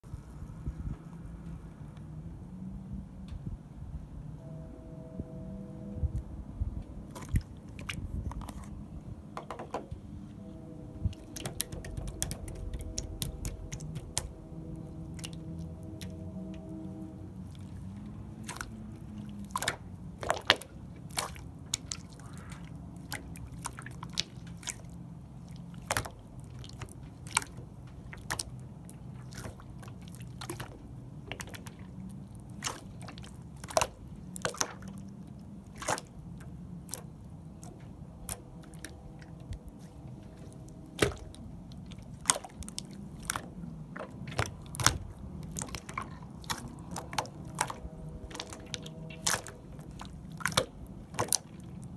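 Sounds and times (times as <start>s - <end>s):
slime squishing and popping: 11.1s - 16.2s, 36.8s - 51.9s.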